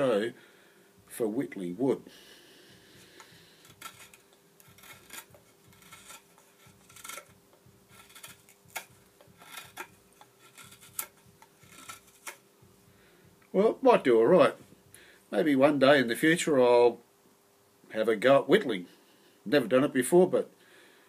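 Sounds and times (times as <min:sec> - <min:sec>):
knife scraping wood: 0:02.6 - 0:13.1.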